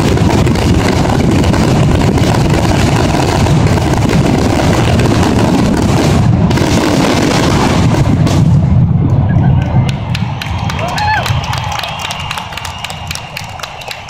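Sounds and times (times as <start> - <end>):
firework shells booming: 0.0 - 9.5
firework crackling: 0.0 - 14.0.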